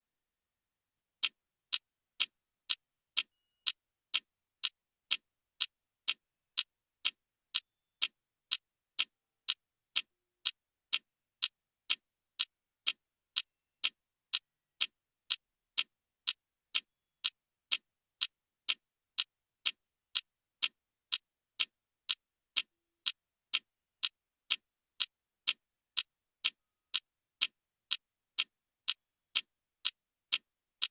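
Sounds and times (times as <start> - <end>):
clock timer ticking: 1.7 - 8.6, 26.0 - 30.9.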